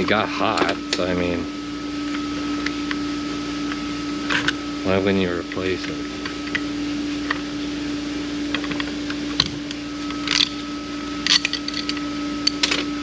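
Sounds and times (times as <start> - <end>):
steady hum: 0.0 - 13.0
metal parts clicking and clinking: 10.2 - 10.6, 11.2 - 12.9.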